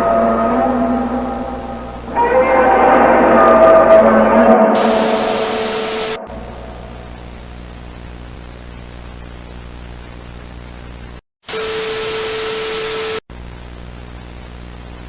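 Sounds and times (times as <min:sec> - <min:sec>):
steady mid-pitched tone: 0:00.0 - 0:07.9
low buzzing hum: 0:00.0 - 0:11.2, 0:12.3 - 0:15.0
static hiss: 0:04.7 - 0:15.0.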